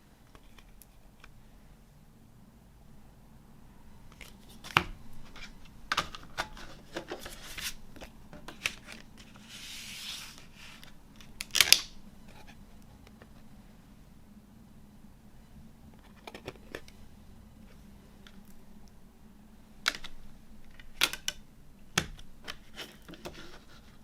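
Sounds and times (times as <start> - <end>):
soft rustling slide: 9.2 - 11.0.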